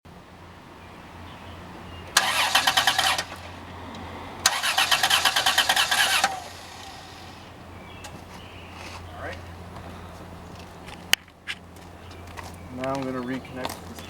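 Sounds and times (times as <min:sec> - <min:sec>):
starter cranking engine: 0:02.2 - 0:03.6, 0:04.4 - 0:07.4.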